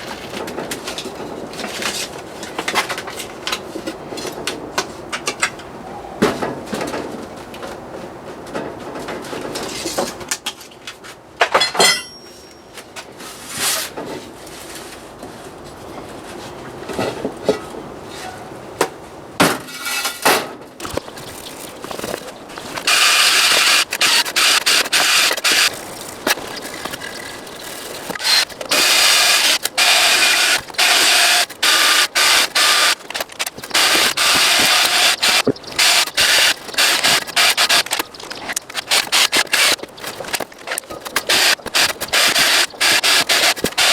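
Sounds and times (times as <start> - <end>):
loud rasping tool noise: 20.8 - 43.9
tool clicks and ratcheting: 20.8 - 43.9.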